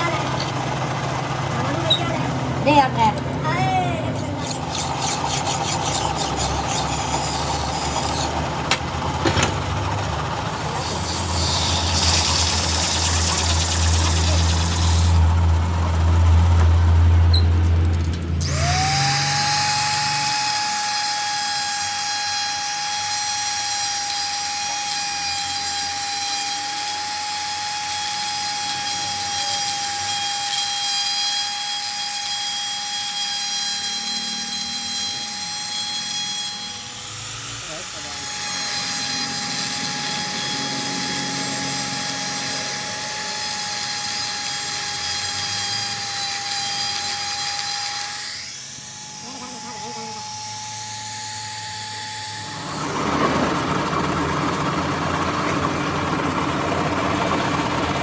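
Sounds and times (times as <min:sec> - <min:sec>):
machine tool cutting metal: 0:00.0 - 0:03.2, 0:04.1 - 0:15.3, 0:18.3 - 0:55.6
high-pitched machine whine: 0:00.0 - 0:17.6, 0:18.3 - 0:58.0.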